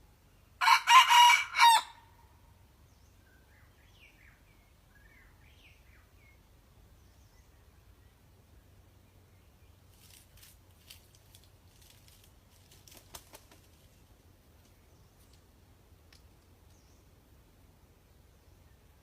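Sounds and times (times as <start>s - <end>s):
low steady hum: 1.9s - 12.9s, 13.6s - 19.0s
crackling and rustling: 9.9s - 15.5s.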